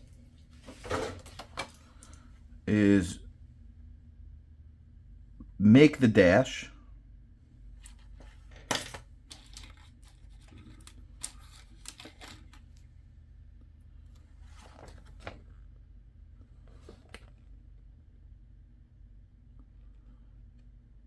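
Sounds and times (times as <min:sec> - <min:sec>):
plastic parts rustling: 0:00.6 - 0:02.2, 0:07.8 - 0:12.8
plastic parts clicking: 0:07.8 - 0:12.6.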